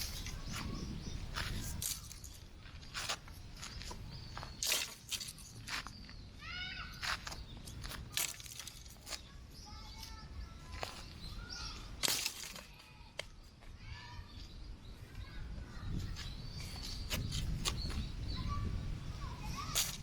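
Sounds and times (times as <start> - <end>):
wind rumble on microphone: 0.0 - 4.7, 14.2 - 20.0
birds chirping: 0.0 - 20.0.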